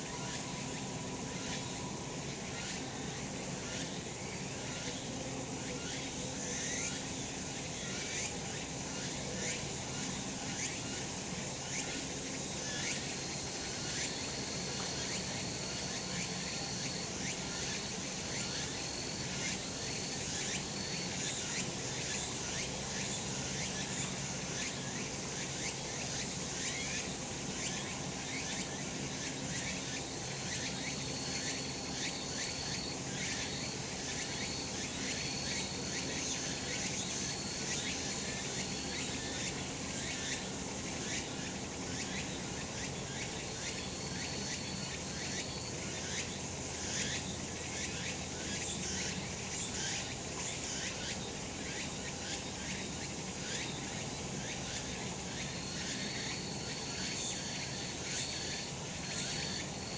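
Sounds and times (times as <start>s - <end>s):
cicadas singing: 0.0s - 59.9s.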